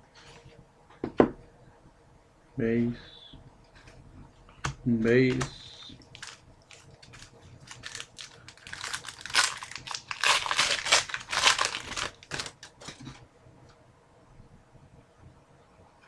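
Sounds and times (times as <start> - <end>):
wrapper crinkling and tearing: 6.0 - 13.2.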